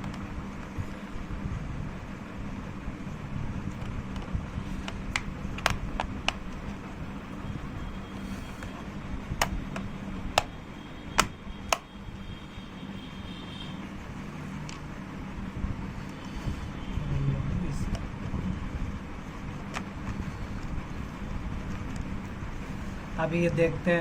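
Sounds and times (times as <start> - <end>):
plastic cover clicks and taps: 3.7 - 6.6, 9.4 - 10.6, 11.2 - 11.9.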